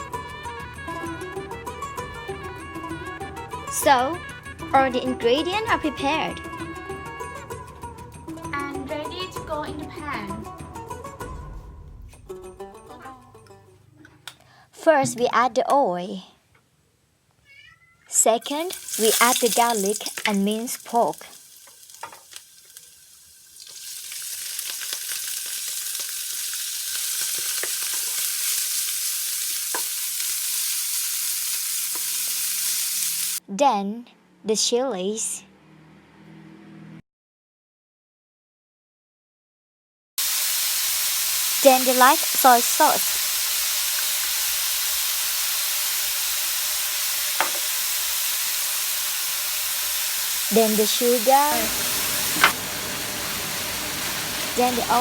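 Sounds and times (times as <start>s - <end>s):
meat sizzling in a pan: 18.4s - 33.4s, 40.2s - 55.0s.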